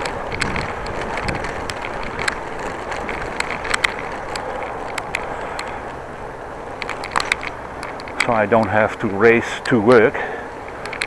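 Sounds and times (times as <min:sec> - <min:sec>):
bicycle tyre and wind rush: 0:00.0 - 0:11.0
small clicks and rattles: 0:00.0 - 0:11.0.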